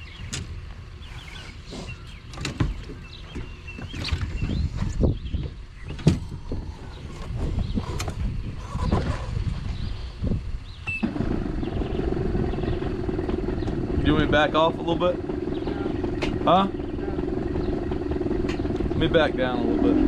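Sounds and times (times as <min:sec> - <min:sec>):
knocks and clanks of boat loading: 0:01.8 - 0:09.1, 0:16.0 - 0:16.4
low rumble: 0:04.3 - 0:20.0
motor running: 0:11.0 - 0:20.0.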